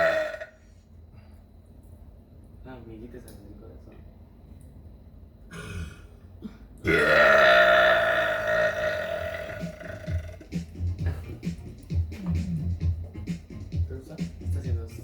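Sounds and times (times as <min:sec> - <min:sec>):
person burping: 0:00.0 - 0:00.5, 0:05.5 - 0:11.2.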